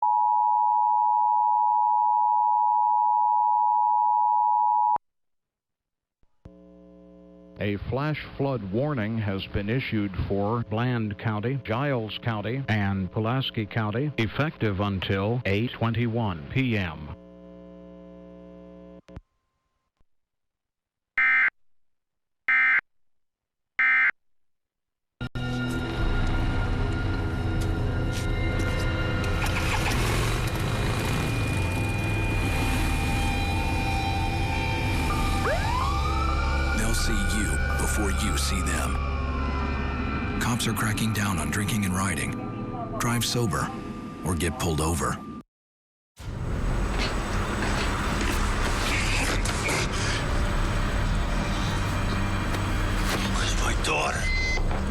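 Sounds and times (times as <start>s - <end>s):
two-tone alarm: 21.2s - 21.5s, 22.5s - 22.8s, 23.8s - 24.2s, 31.5s - 40.8s, 54.0s - 54.9s.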